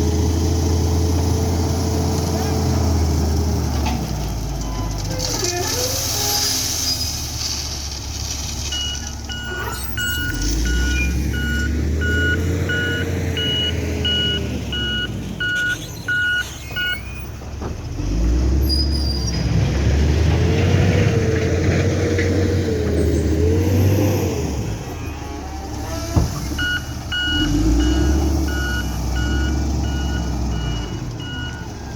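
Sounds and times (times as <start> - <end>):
wheel loader diesel engine revving: 0.0 - 7.5, 8.2 - 31.9
reversing alarm beeping: 8.8 - 17.2, 26.6 - 31.7.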